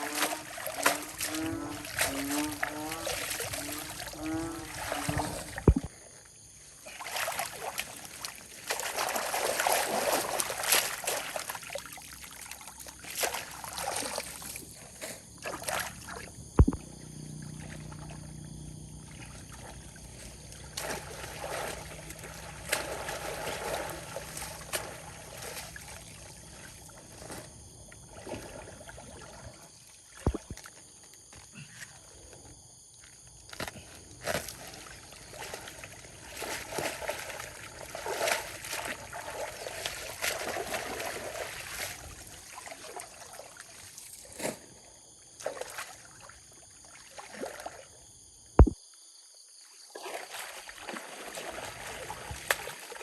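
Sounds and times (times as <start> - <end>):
water sloshing and splashing: 0.0 - 6.0, 6.7 - 32.4, 33.0 - 44.8, 45.4 - 48.8, 49.9 - 53.0
low steady hum: 16.3 - 28.7.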